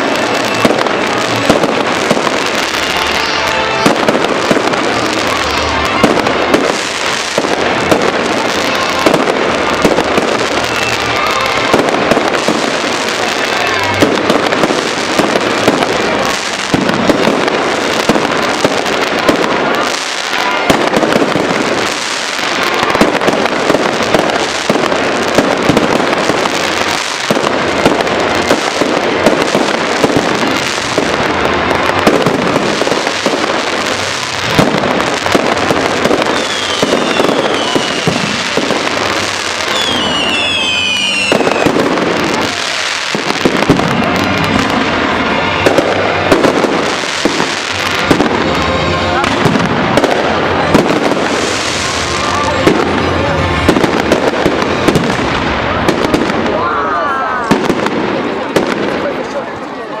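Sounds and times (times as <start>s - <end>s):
fireworks bangs and crackling: 0.0s - 60.0s
falling firework whistles: 36.0s - 44.7s.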